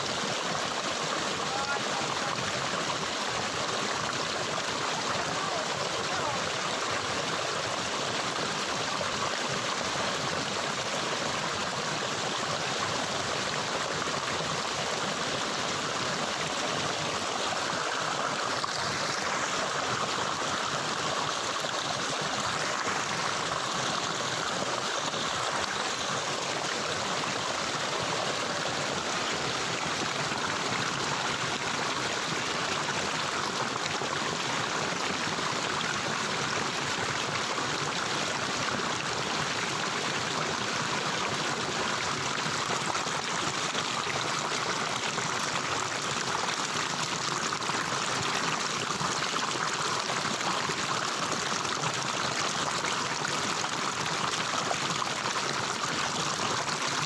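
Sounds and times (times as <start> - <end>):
stream of water rushing: 0.0 - 57.0.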